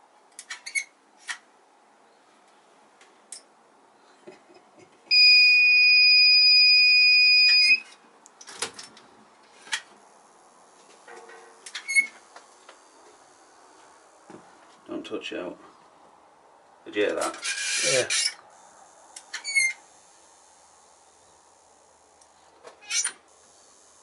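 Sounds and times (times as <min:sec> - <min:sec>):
alarm buzzer beep: 0:05.1 - 0:07.8.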